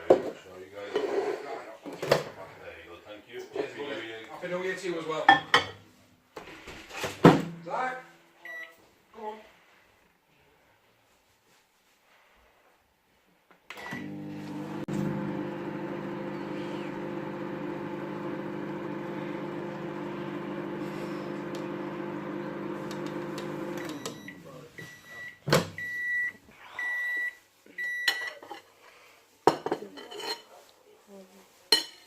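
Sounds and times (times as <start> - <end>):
microwave oven humming: 13.8 - 24.4.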